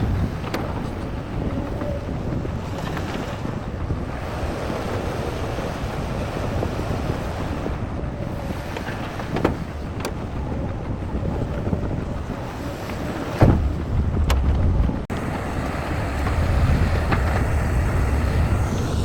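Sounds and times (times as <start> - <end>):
wind buffeting microphone: 0.0 - 19.0
diesel construction machinery rumbling: 13.4 - 19.0.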